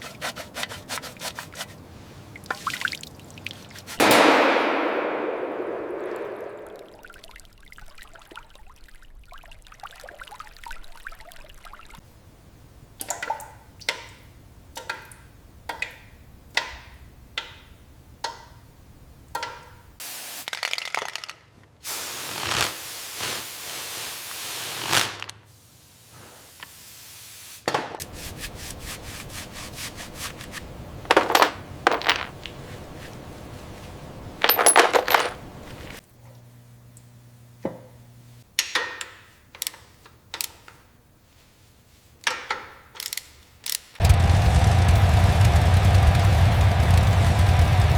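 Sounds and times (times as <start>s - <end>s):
metal scraping strokes: 0.0s - 1.8s
loud hiss: 20.0s - 20.5s, 21.8s - 31.0s
short hissing bursts: 20.0s - 20.5s, 21.8s - 30.5s.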